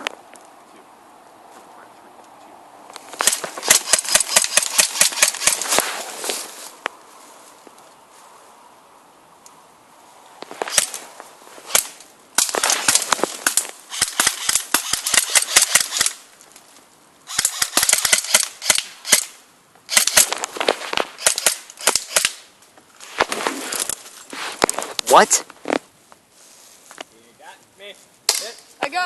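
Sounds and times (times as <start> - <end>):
airsoft guns firing: 3.2 - 5.8, 11.7 - 16.2, 17.3 - 20.4, 21.2 - 22.4.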